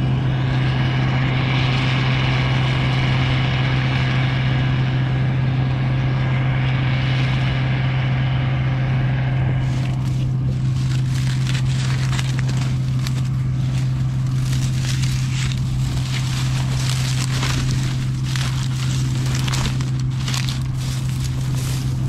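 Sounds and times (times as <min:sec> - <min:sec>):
farm machine engine droning: 0:00.0 - 0:22.0
crackling and crunching: 0:09.6 - 0:22.0.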